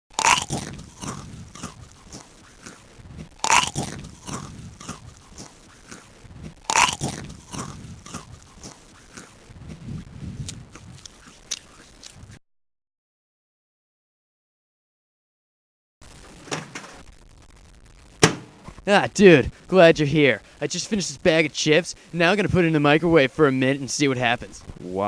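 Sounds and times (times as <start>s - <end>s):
crunching bites of chips: 0.1s - 9.4s
chewing: 0.1s - 12.3s.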